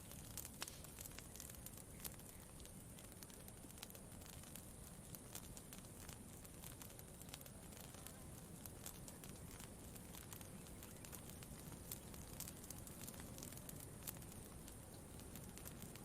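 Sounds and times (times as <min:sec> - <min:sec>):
campfire crackling: 0:00.0 - 0:16.0
fire pops and snaps: 0:00.0 - 0:16.0
low steady background noise: 0:00.0 - 0:16.0.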